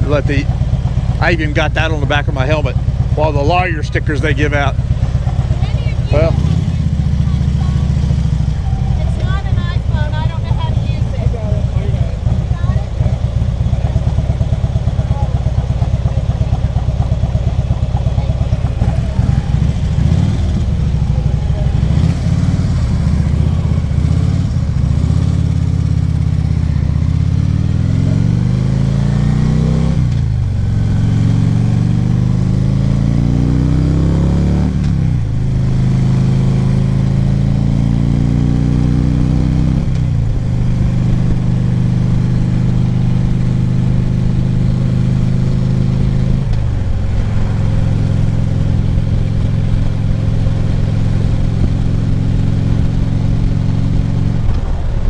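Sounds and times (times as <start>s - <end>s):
motorcycle engine accelerating: 0.0s - 55.0s
wind rush on microphone: 52.6s - 55.0s.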